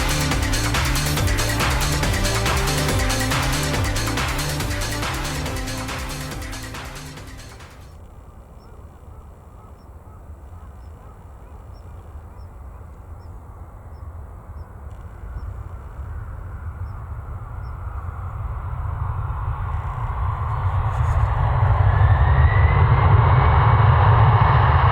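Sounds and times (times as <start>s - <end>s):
rushing air: 0.0s - 8.0s
jet engines rumbling: 0.0s - 24.9s.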